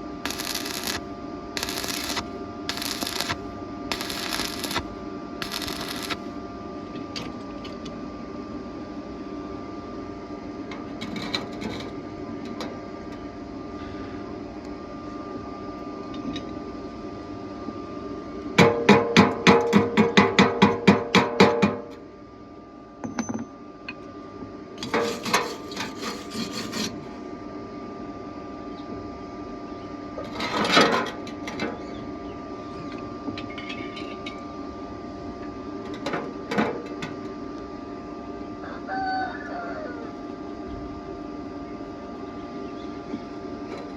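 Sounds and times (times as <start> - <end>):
steady hum: 0.0 - 10.8, 24.6 - 27.5.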